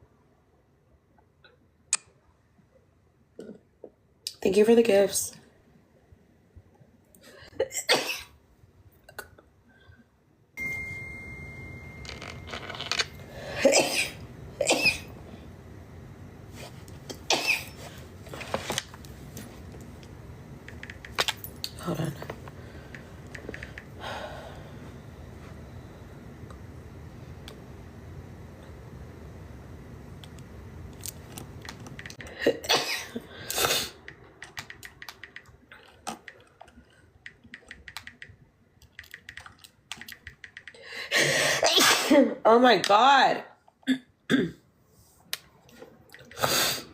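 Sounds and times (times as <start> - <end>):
small clicks: 33.5 - 40.8
woman sneezing: 41.5 - 42.4.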